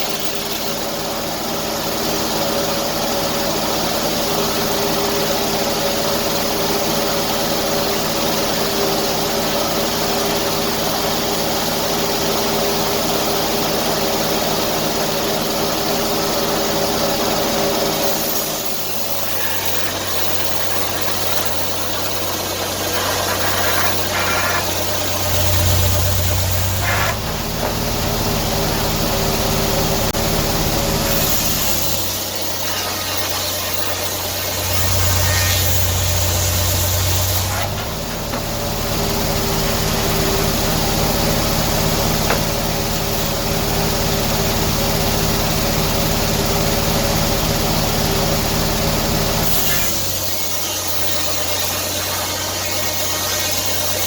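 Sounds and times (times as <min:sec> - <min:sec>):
engine running: 0:00.0 - 0:54.0
deeper hum: 0:19.7 - 0:32.1.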